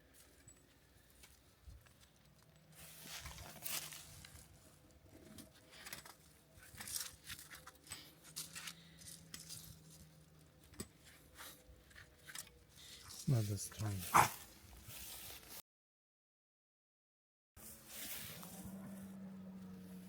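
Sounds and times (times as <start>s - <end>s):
fence wire clicks and scrapes: 1.2s - 13.2s.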